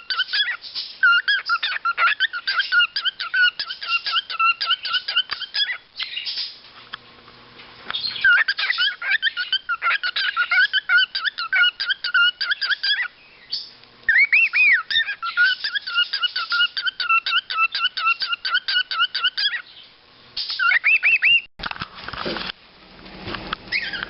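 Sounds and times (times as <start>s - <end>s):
cockatiel chirping: 0.0s - 6.5s, 7.9s - 19.8s, 20.5s - 21.5s, 23.7s - 24.0s.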